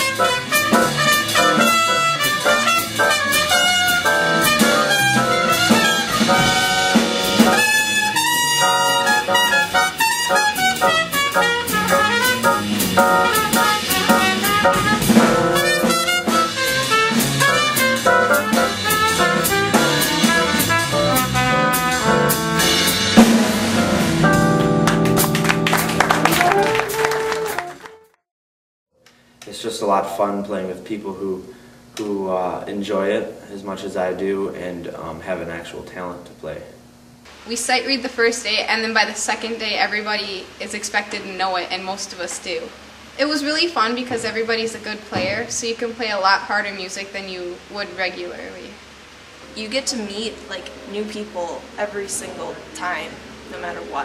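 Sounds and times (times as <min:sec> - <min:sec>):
trumpets: 0:00.0 - 0:24.6, 0:25.2 - 0:28.2
drum kit: 0:00.0 - 0:27.9
jazz ensemble playing: 0:00.0 - 0:28.2.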